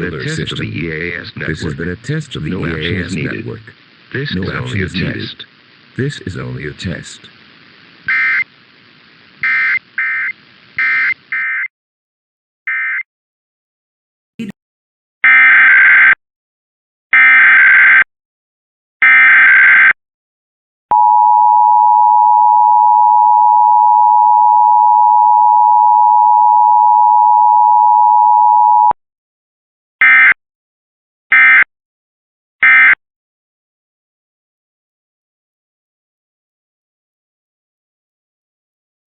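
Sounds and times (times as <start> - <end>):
data bursts: 8.0 - 8.5, 9.4 - 11.7.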